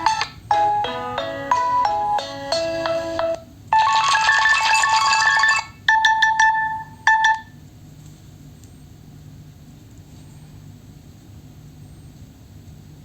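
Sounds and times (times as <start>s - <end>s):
smartphone ringtones: 0.0s - 7.5s.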